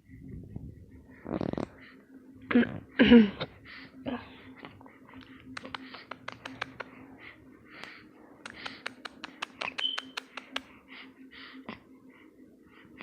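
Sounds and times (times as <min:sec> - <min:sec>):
faint steady hum: 0:00.0 - 0:13.0
sharp clicks: 0:05.5 - 0:07.0, 0:07.8 - 0:10.7.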